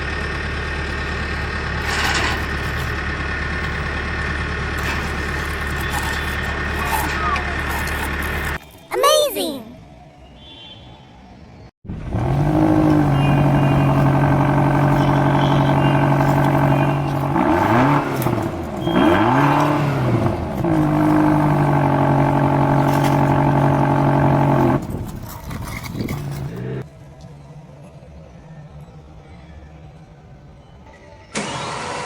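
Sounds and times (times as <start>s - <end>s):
vehicle engine running and revving: 11.9s - 26.9s.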